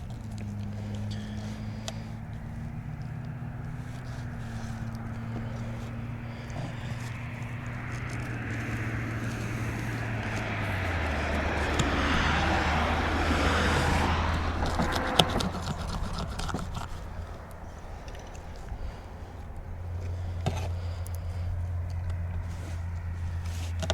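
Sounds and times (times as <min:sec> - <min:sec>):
vehicle passing by: 0:00.0 - 0:23.9.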